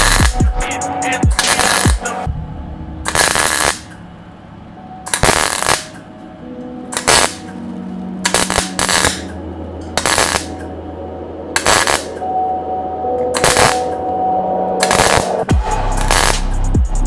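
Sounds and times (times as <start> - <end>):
crackling tack welds: 0.0 - 2.3, 3.1 - 4.0, 5.1 - 6.1, 6.9 - 9.4, 10.0 - 10.7, 11.6 - 12.2, 13.4 - 14.0, 14.8 - 17.0.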